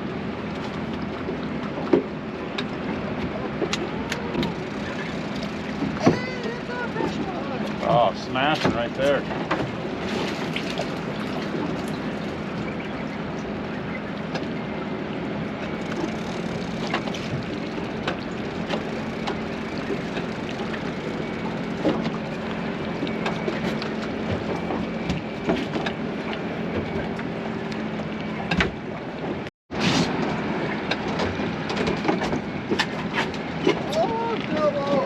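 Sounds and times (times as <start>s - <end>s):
boat engine running: 0.0s - 35.0s
water noise: 0.0s - 35.0s.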